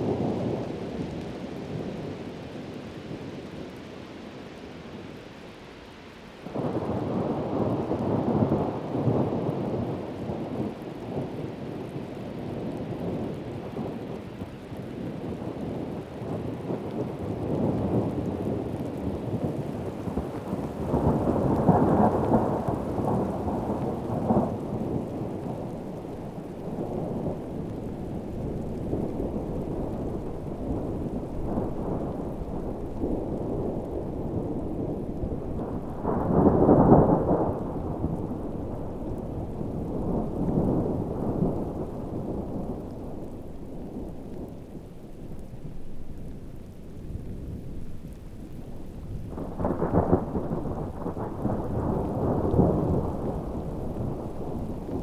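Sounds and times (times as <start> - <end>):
heavy rain: 0.0 - 55.0
rolling thunder: 15.2 - 55.0.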